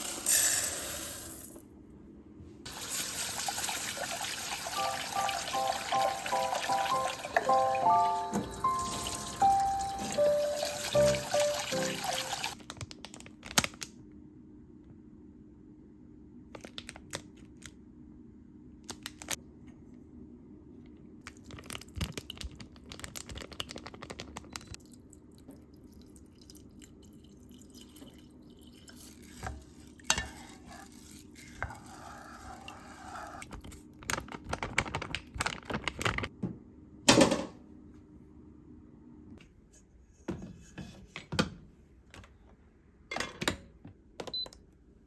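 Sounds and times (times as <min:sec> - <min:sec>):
paper bags rustling: 0:33.9 - 0:36.3.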